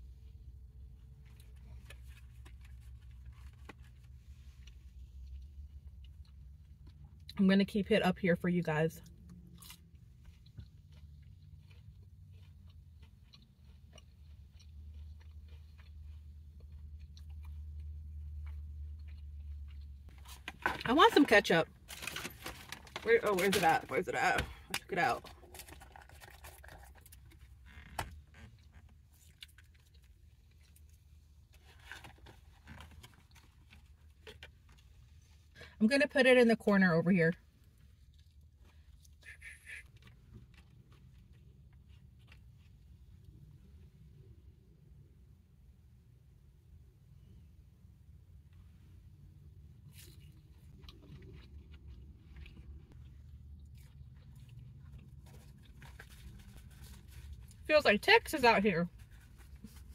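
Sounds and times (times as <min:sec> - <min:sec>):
chewing and biting food: 0:00.8 - 0:07.4, 0:09.0 - 0:20.9, 0:24.5 - 0:35.4, 0:37.7 - 0:43.6, 0:49.7 - 0:57.6
food packaging clicks and rustles: 0:01.2 - 0:07.0, 0:18.4 - 0:35.1, 0:53.6 - 0:57.6.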